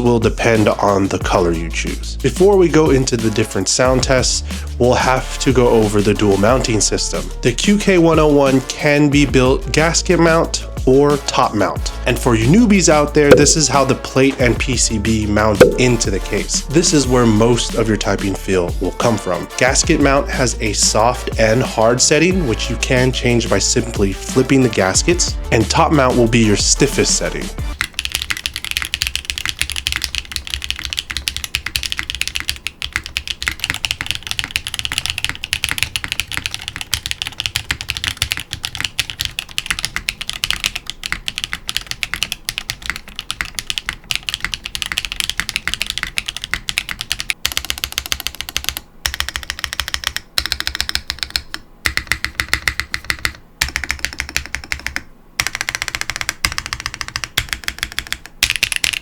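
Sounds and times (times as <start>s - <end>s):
mechanical keyboard typing: 27.0s - 59.0s.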